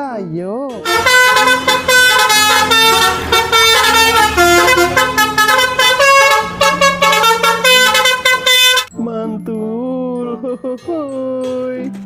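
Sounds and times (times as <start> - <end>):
bus horn playing a melody: 0.7 - 8.9.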